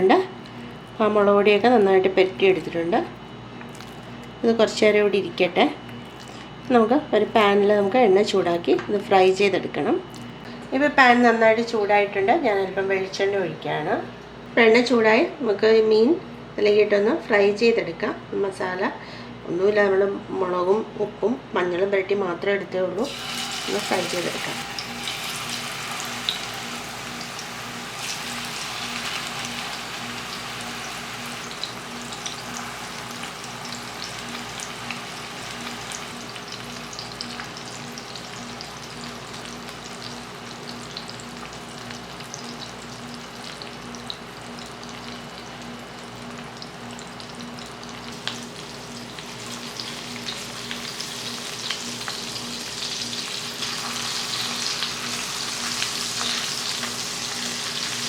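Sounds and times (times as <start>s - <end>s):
fish sizzling in a pan: 23.1s - 58.0s.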